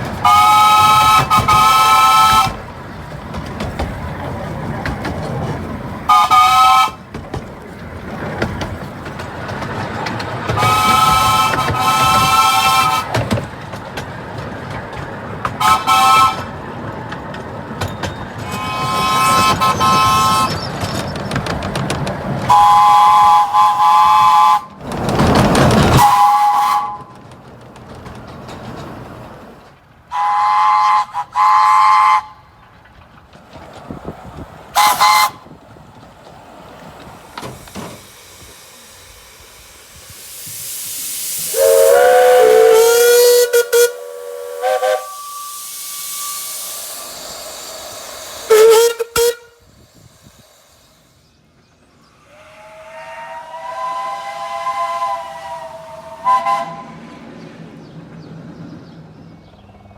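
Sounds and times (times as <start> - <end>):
hissing steam rush: 0.0 - 59.6
running train rumble: 0.0 - 59.9
steam locomotive whistle blasts: 0.2 - 2.6, 6.1 - 7.0, 10.5 - 13.4, 15.6 - 16.5, 18.4 - 20.7, 22.5 - 24.8, 25.9 - 27.2, 30.1 - 32.5, 34.8 - 35.5, 37.3 - 51.3, 52.1 - 57.2.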